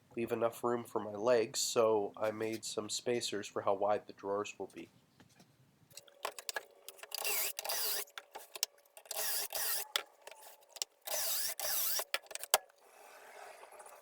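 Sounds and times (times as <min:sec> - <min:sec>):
sharp clicks and knocks: 0:05.9 - 0:12.8
power tool motor whirring: 0:06.9 - 0:13.8.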